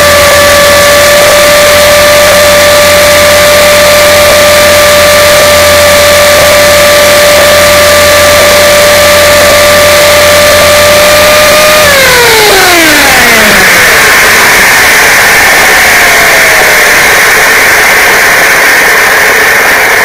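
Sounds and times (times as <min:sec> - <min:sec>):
rc helicopter motor whining: 0:00.0 - 0:20.0.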